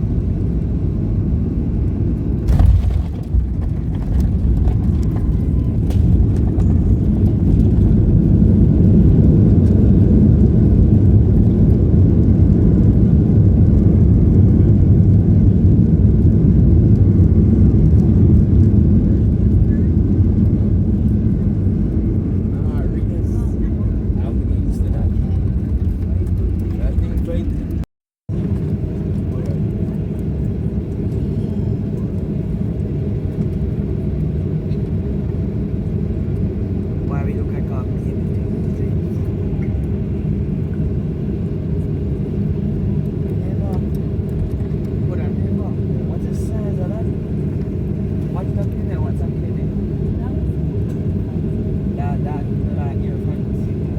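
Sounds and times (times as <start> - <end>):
aircraft cabin rumble: 0.0 - 53.9.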